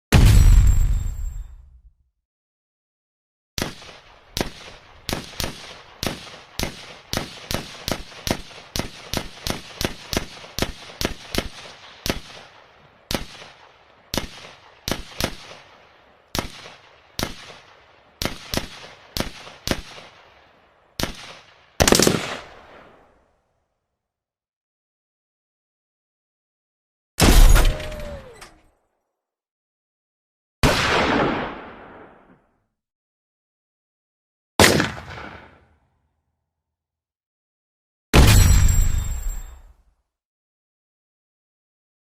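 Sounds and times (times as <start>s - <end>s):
pistol gunshots echoing: 21.0s - 22.6s, 34.6s - 35.5s.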